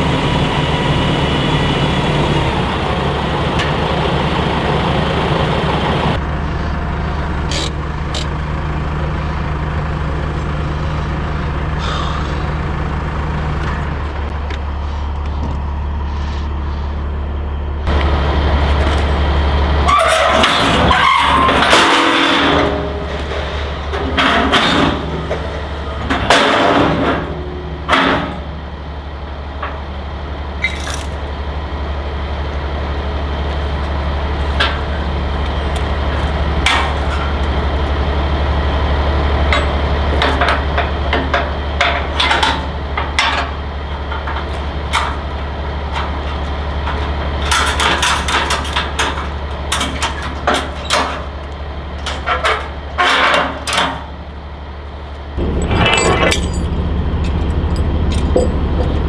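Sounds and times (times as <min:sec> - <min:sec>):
engine idling: 0:00.0 - 0:59.0
metal gear clanking and knocking: 0:17.9 - 0:54.1, 0:55.4 - 0:59.0.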